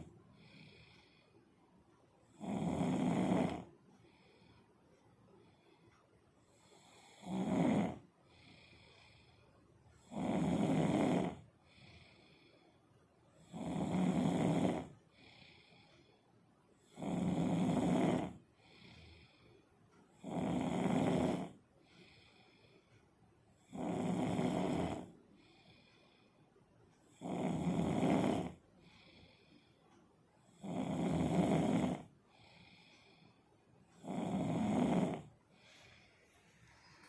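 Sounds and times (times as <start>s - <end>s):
person snoring: 2.4s - 3.7s, 6.7s - 8.9s, 10.1s - 11.5s, 13.4s - 15.8s, 16.9s - 19.1s, 20.2s - 21.6s, 23.7s - 25.8s, 27.1s - 29.4s, 30.5s - 33.3s, 34.0s - 37.0s
breathy exhale: 35.6s - 37.0s.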